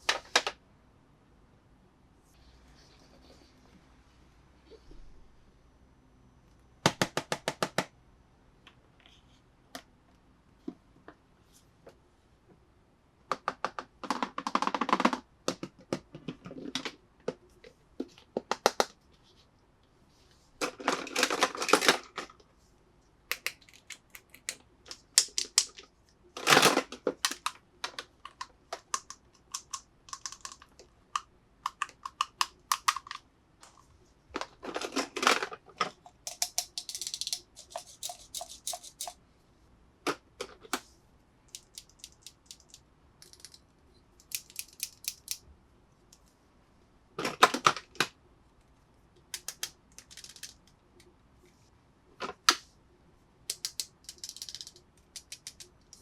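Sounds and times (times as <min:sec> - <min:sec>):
plastic toy pieces clicking: 0:23.3 - 0:25.8, 0:26.4 - 0:33.2, 0:34.7 - 0:39.2, 0:41.5 - 0:43.6, 0:44.2 - 0:45.4, 0:49.3 - 0:50.8, 0:53.5 - 0:56.0.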